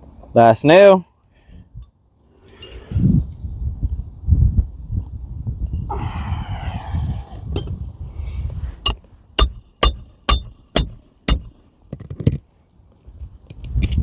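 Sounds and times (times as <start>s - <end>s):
hammer striking roofing nail: 9.4s - 11.6s.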